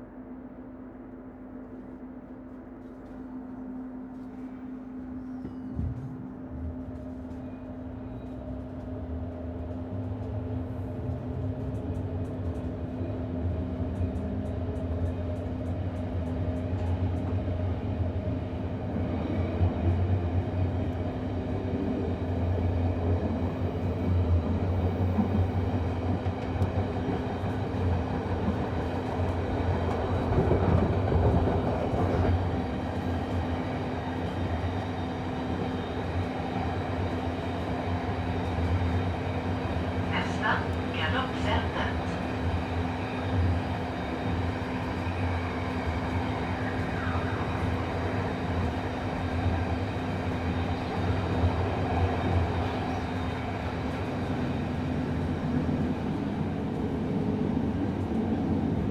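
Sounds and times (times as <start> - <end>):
train electrical hum: 0.0 - 58.9
train rail rumble: 21.8 - 58.9.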